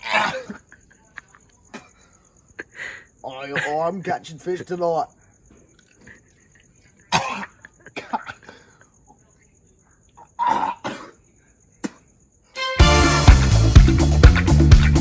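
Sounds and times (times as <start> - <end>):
person coughing: 0.0 - 0.7, 7.1 - 8.8, 10.4 - 11.2.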